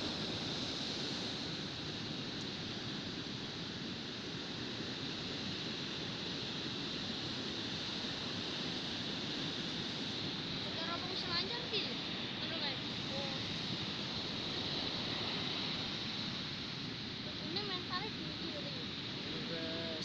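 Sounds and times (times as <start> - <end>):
surf breaking on beach: 7.8 - 20.0.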